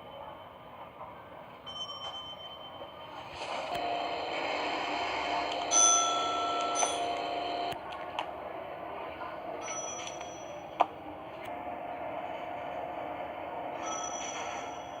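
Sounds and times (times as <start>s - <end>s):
elevator running with a whine: 0.0s - 15.0s
electronic elevator chime: 3.7s - 7.8s.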